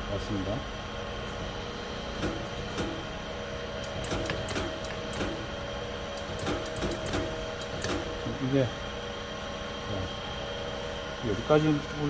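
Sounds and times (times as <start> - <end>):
hydraulic crimper humming: 3.8 - 8.4.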